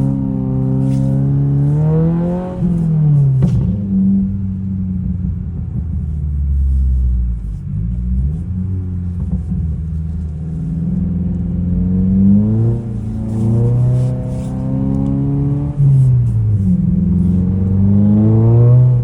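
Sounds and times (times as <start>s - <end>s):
car exhaust rumble: 0.0s - 19.0s.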